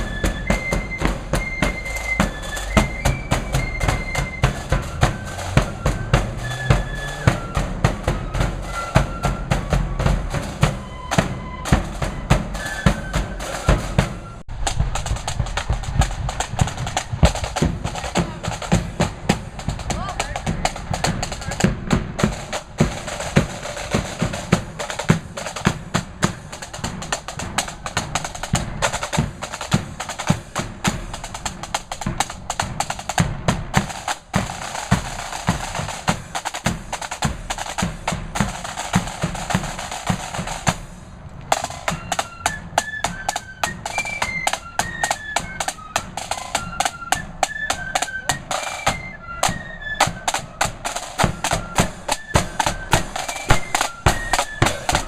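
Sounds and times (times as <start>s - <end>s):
flutes playing high melody: 0.0s - 14.4s, 41.5s - 55.0s
snare and bass drums marching: 0.0s - 55.0s.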